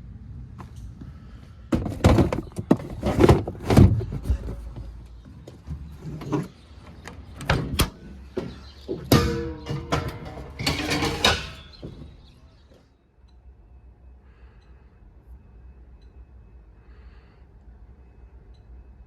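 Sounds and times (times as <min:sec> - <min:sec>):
irregular knocks and clatters: 0:01.7 - 0:12.4.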